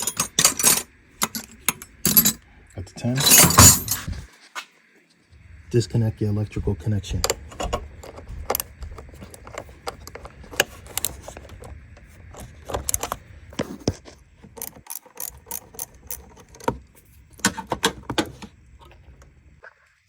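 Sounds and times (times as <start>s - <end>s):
socket ratchet clicking: 12.4s - 13.2s, 14.6s - 16.8s.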